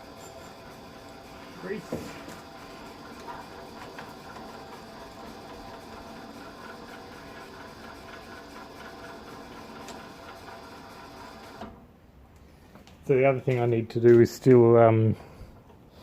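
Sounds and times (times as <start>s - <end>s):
lathe motor humming: 0.0s - 11.8s.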